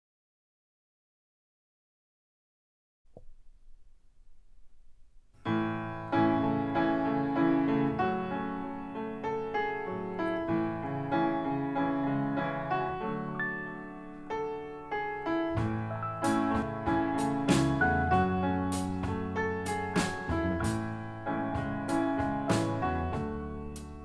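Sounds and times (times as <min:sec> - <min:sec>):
piano music over loudspeakers: 0:05.4 - 0:24.0.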